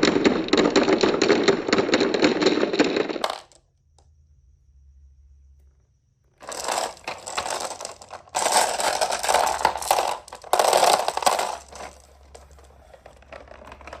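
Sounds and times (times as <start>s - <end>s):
marbles rolling down wooden run: 0.0s - 3.6s, 6.4s - 14.0s.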